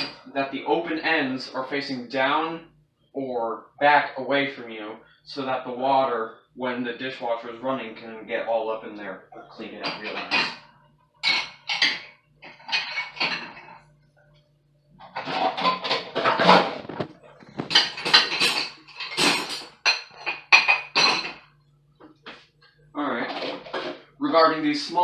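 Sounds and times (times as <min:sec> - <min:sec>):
dishes clattering: 0:00.0 - 0:00.3, 0:09.8 - 0:13.8, 0:15.0 - 0:21.4, 0:23.2 - 0:24.0
low steady hum: 0:00.0 - 0:25.0.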